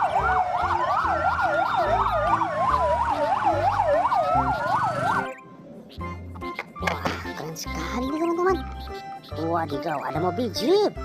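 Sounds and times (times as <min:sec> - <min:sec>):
fire truck siren yelp and wail: 0:00.0 - 0:05.5.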